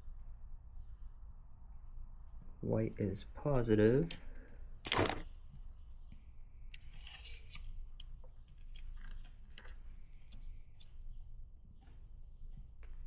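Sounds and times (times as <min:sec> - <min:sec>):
short rustle: 0:04.9 - 0:05.2.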